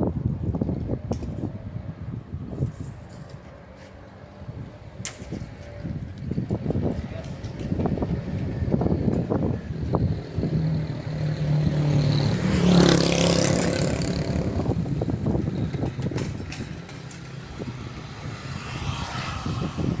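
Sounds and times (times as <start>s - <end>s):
vehicle driving past: 7.8s - 15.4s, 17.4s - 20.0s.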